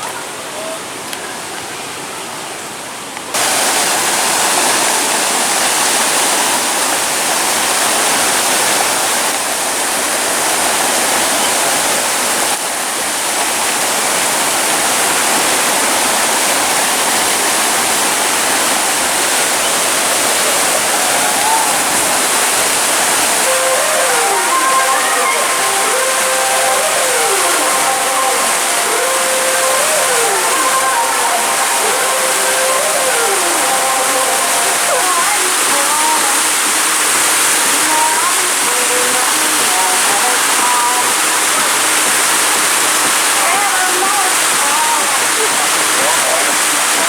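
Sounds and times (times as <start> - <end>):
loud steady rushing noise: 3.4 - 47.0.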